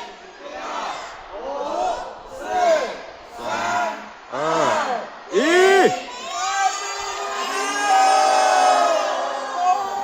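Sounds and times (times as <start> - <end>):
crowd yelling and whooping: 3.4 - 10.0.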